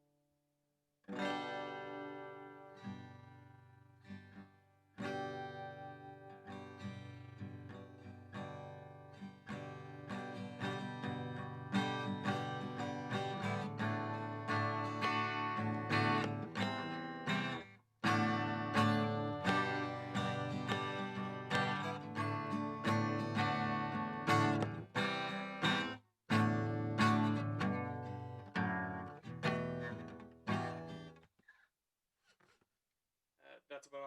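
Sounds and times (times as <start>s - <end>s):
guitar strumming: 1.1s - 4.4s, 5.0s - 31.2s.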